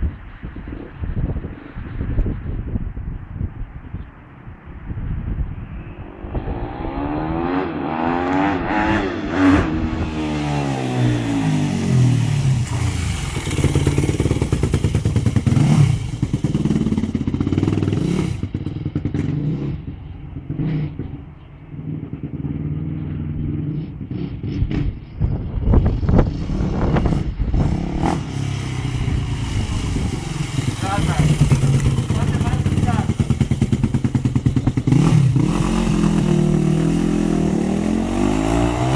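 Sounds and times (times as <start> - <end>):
motocross bike engine: 7.6 - 21.2, 25.8 - 38.9.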